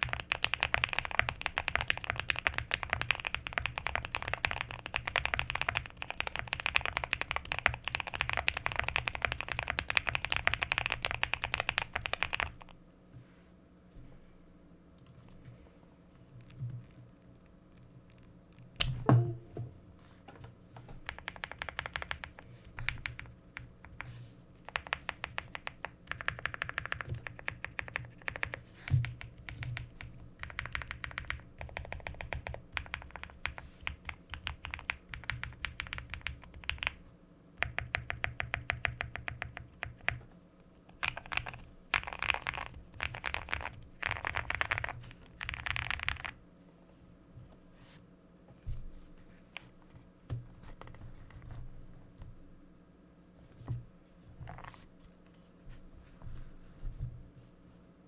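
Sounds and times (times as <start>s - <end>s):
mechanical keyboard typing: 0.0s - 12.7s, 21.0s - 24.0s, 24.7s - 37.0s, 37.6s - 40.2s, 40.9s - 46.4s
low knock: 19.0s - 19.8s.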